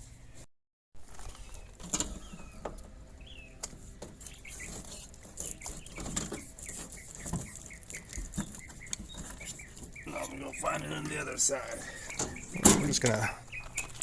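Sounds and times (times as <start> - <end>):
small birds chirping: 1.1 - 14.0.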